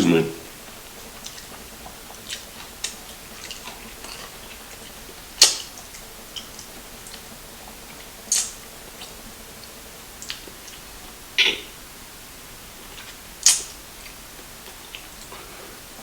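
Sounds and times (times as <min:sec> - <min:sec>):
wet chewing mouth clicks: 0:01.1 - 0:07.3, 0:11.4 - 0:11.8.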